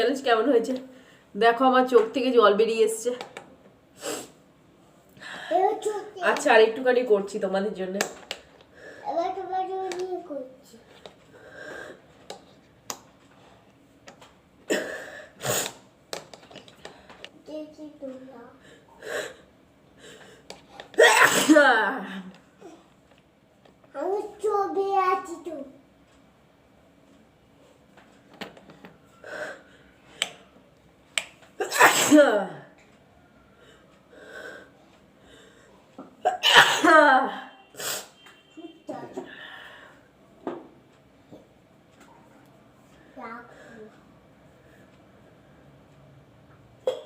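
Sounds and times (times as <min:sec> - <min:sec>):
woman sneezing: 0:21.0 - 0:21.8, 0:31.6 - 0:32.6, 0:36.3 - 0:38.1.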